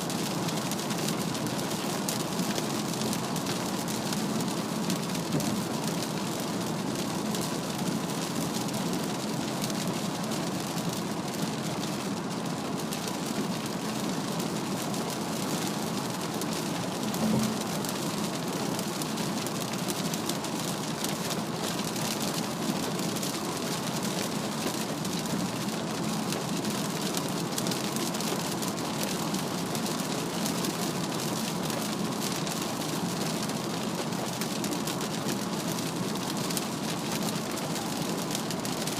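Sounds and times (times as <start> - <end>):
heavy rain on car body and glass: 0.0 - 38.9
tyre and road noise: 17.0 - 18.0
short knock: 17.2 - 17.6.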